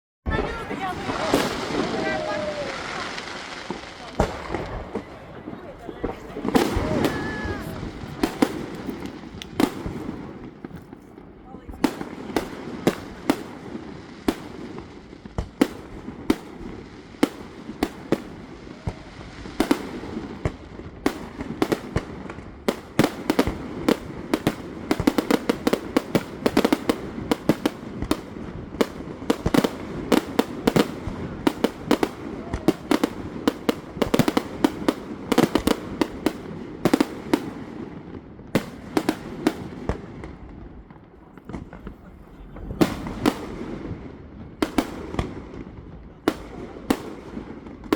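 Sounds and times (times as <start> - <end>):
fireworks bangs and crackles: 0.3 - 47.9.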